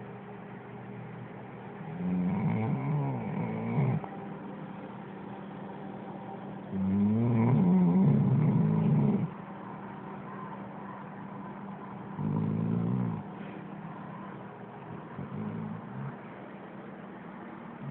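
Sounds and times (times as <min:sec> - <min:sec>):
steady low hum: 0:00.0 - 0:17.9
dog snoring: 0:01.9 - 0:04.1, 0:06.7 - 0:09.4, 0:12.2 - 0:13.4, 0:14.9 - 0:16.2.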